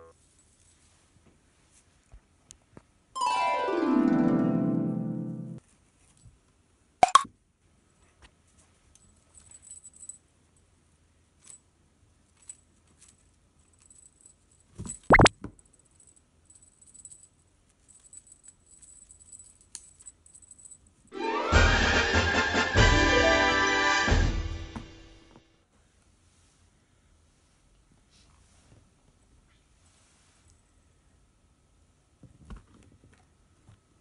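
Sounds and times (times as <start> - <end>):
faint ticks and rustles: 0.0 - 3.0, 5.6 - 6.8, 7.6 - 21.1, 26.0 - 30.9
cartoon plop sound effect: 7.0 - 7.3.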